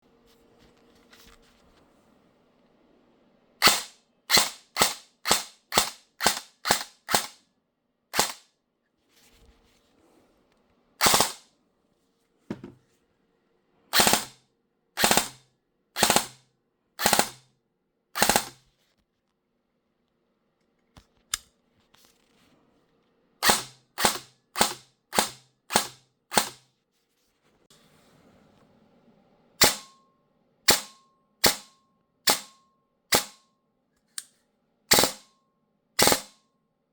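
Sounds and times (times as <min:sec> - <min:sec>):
airsoft gun shots: 0:03.6 - 0:07.4, 0:08.2 - 0:08.4, 0:11.0 - 0:11.4, 0:14.0 - 0:14.4, 0:15.0 - 0:15.4, 0:16.0 - 0:16.4, 0:17.0 - 0:17.4, 0:18.2 - 0:18.6, 0:23.4 - 0:26.6, 0:29.6 - 0:29.9, 0:30.7 - 0:31.7, 0:32.3 - 0:33.4, 0:34.9 - 0:35.2, 0:36.0 - 0:36.4.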